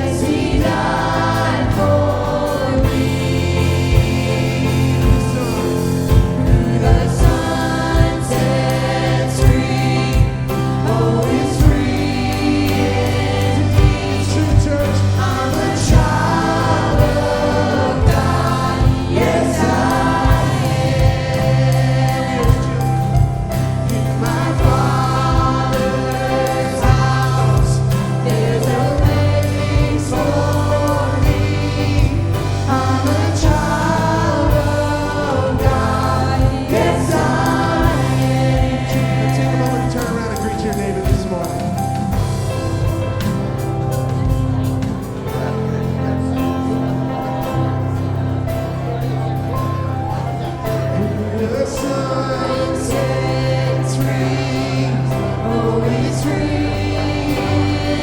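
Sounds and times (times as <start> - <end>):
steady drum beat: 0.0 - 48.7, 50.9 - 58.0
bass: 0.0 - 58.0
people singing: 0.0 - 58.0.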